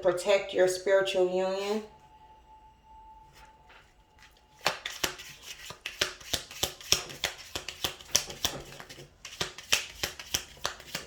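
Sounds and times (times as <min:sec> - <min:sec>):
cards being shuffled: 0:04.2 - 0:11.0.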